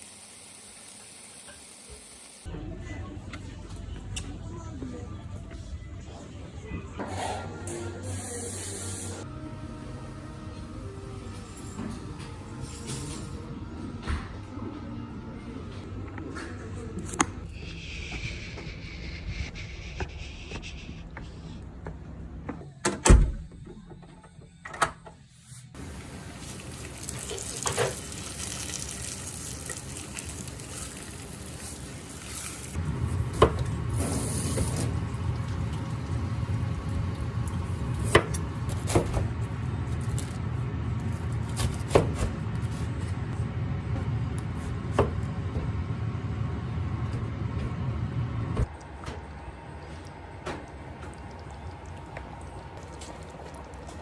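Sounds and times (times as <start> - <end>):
tap water running into sink: 34.3 - 38.3.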